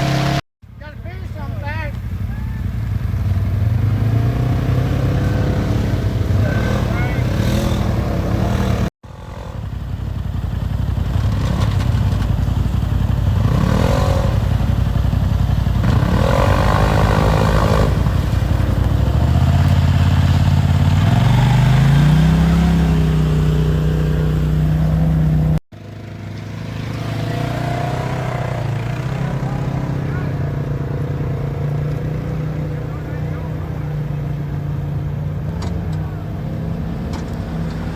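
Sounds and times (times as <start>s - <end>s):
engine running under load: 1.0s - 37.9s
clatter and scraping: 11.1s - 12.7s.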